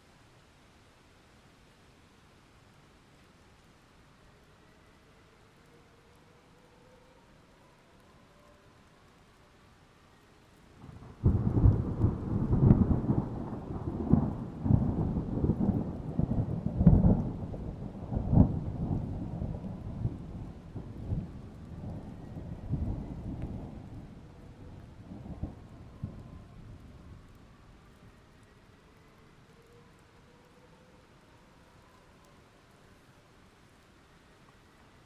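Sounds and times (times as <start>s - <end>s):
thunderclap rumbling: 10.8s - 27.6s.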